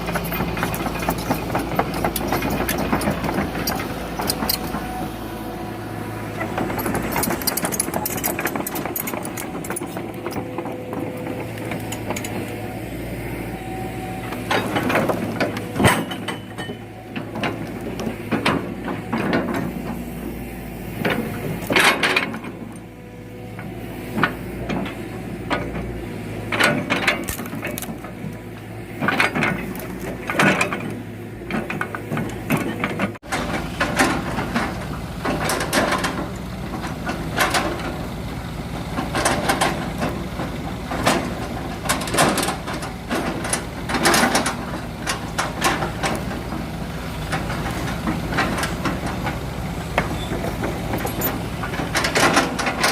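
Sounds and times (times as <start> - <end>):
logs knocking and creaking: 0.0 - 4.9, 6.3 - 12.7, 14.2 - 20.2, 38.8 - 52.9
excavator engine running: 0.0 - 52.9.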